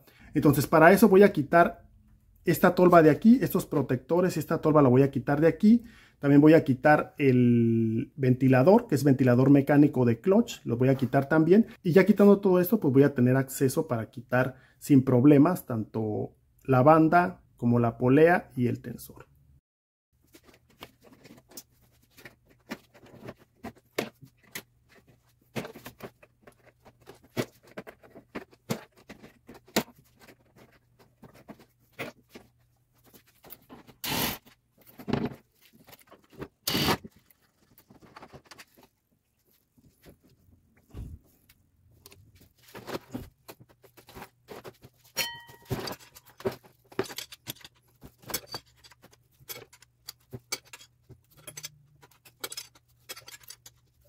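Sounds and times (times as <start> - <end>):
short rasping bursts: 34.0 - 34.4
metal clicks and scrapes of hand tools: 45.1 - 54.0
ringing metal clink: 45.2 - 45.8.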